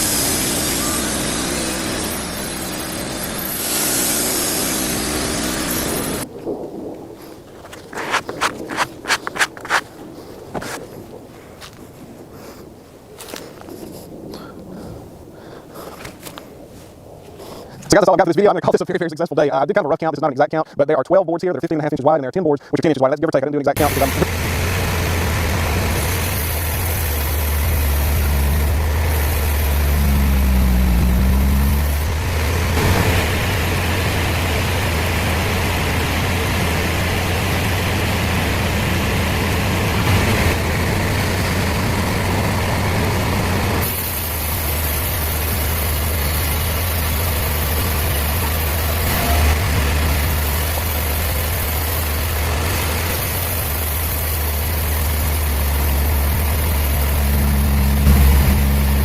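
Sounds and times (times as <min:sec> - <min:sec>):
heavy engine running: 0:00.0 - 0:06.3, 0:23.8 - 0:59.0.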